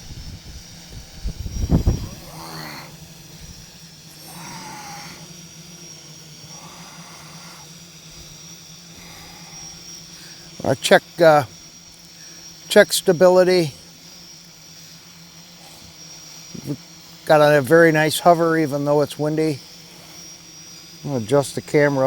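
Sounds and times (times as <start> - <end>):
wind buffeting microphone: 0.0 - 2.4
drone motors humming: 0.0 - 22.0.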